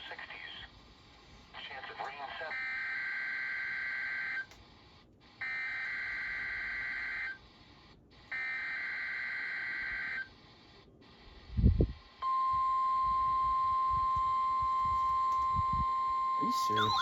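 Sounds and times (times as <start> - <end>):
steady alert tone: 16.4 - 17.0
warbling digital data tones: 16.4 - 17.0.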